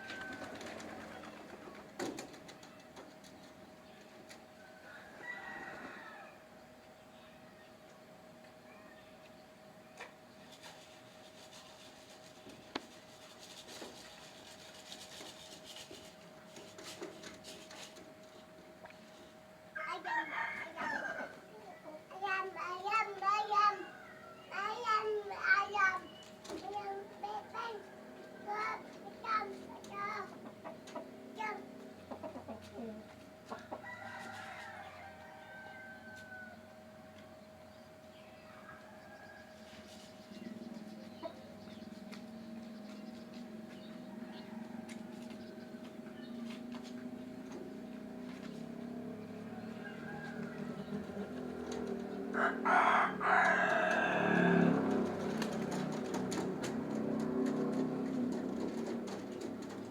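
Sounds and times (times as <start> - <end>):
rooster crowing: 0.0 - 0.9, 4.6 - 6.5, 19.8 - 21.6, 33.6 - 36.9, 38.5 - 39.7, 44.1 - 45.4, 49.3 - 55.2
faint scratching and rustling: 10.4 - 19.4, 38.8 - 52.1.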